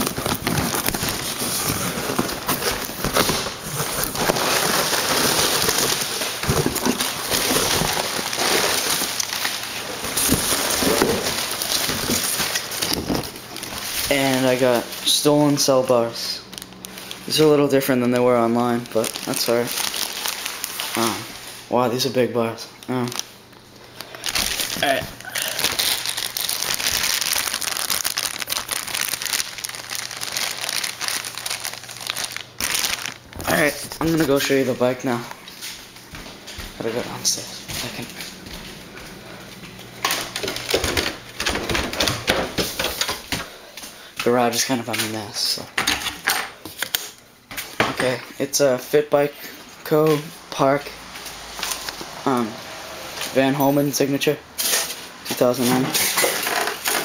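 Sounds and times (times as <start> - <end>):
packaging crinkling and tearing: 0.0 - 21.6, 22.8 - 35.3, 40.0 - 43.4, 54.6 - 57.0.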